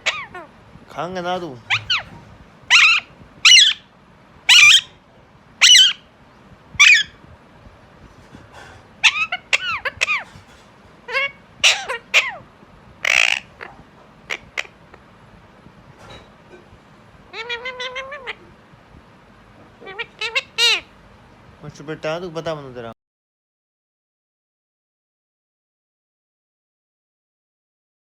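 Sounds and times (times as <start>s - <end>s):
parrot squawking loudly: 0.0s - 0.6s, 1.7s - 3.9s, 4.5s - 5.0s, 5.6s - 6.1s, 6.8s - 7.2s, 9.0s - 10.4s, 11.0s - 15.0s, 17.3s - 18.4s, 19.8s - 20.9s.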